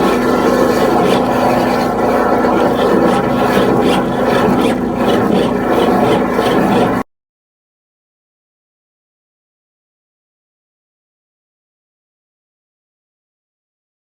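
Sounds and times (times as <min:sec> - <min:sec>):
drain jetting machine engine running: 0:00.0 - 0:07.0
water jet rasping in pipe: 0:00.0 - 0:07.0.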